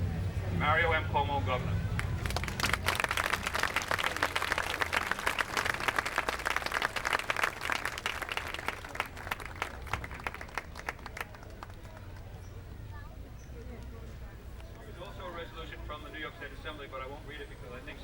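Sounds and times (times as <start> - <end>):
crowd applauding: 2.0 - 12.4.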